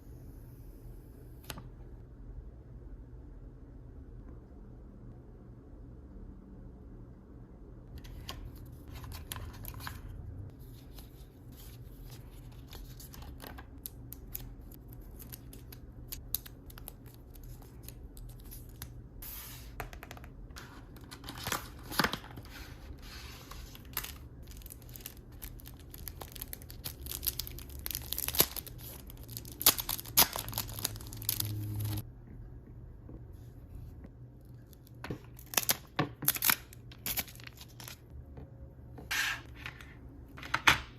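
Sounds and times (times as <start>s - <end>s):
packaging tearing and crinkling: 23.7s - 32.0s, 35.4s - 38.0s.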